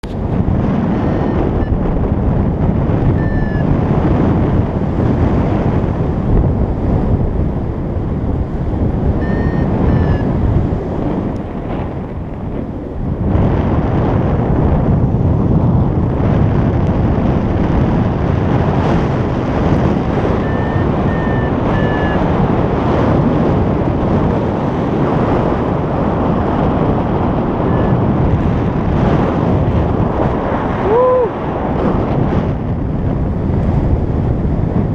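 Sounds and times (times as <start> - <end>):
wind buffeting microphone: 0.0 - 34.9
low tone: 3.0 - 3.8, 9.0 - 10.6, 20.0 - 22.4
short high beeps: 3.1 - 3.6, 9.2 - 10.3, 20.4 - 22.2, 27.7 - 28.0.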